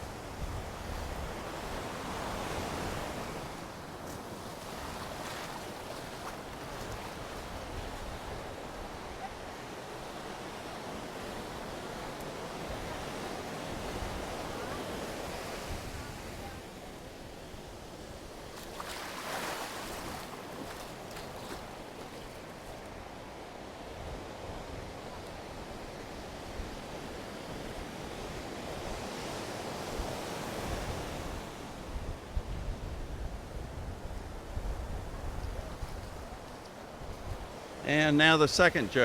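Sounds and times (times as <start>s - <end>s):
wind rumbling on microphone: 0.0s - 9.3s, 27.8s - 37.6s
ocean surf breaking: 0.0s - 23.8s, 35.6s - 39.0s.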